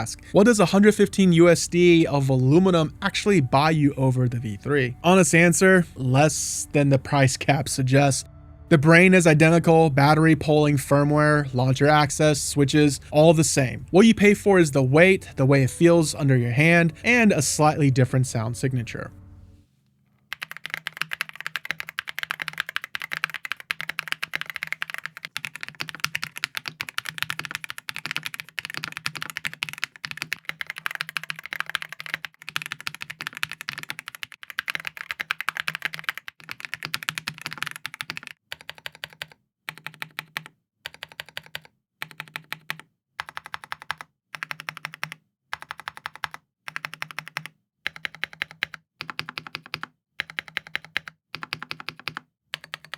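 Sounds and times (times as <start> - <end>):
mechanical keyboard keystrokes clacking: 20.3 - 52.9.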